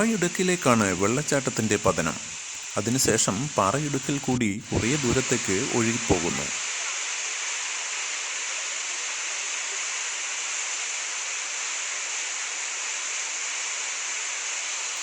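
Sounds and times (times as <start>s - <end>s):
waterfall rushing: 0.0s - 7.2s.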